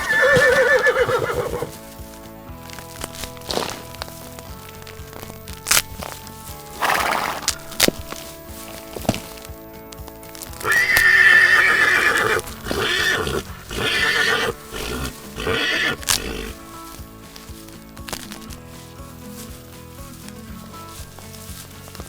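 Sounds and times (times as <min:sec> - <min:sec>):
horse whinnying: 0:00.0 - 0:02.0, 0:06.6 - 0:08.1, 0:10.6 - 0:17.0
background music: 0:00.0 - 0:22.0.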